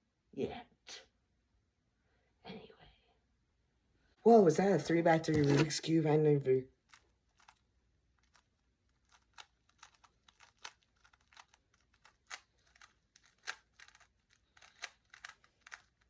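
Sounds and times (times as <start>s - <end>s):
puzzle cube plastic clicks: 6.8s - 16.0s.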